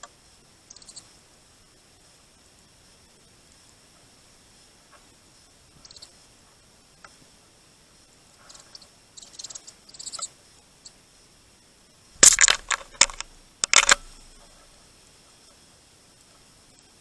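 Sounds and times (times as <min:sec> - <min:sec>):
faint high-pitched sounds: 0:00.0 - 0:17.0
birds pecking at feeder: 0:12.2 - 0:14.8.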